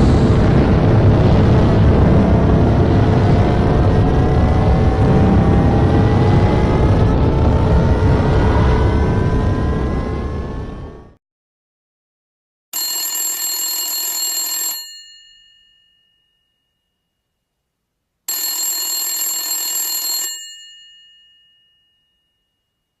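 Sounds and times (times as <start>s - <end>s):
telephone bell ringing: 12.8s - 16.6s, 18.3s - 22.6s.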